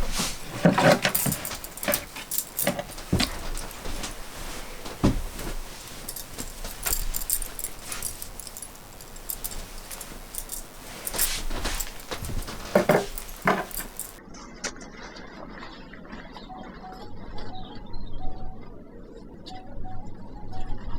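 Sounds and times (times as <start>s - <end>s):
objects knocking and clinking: 0.0s - 14.2s.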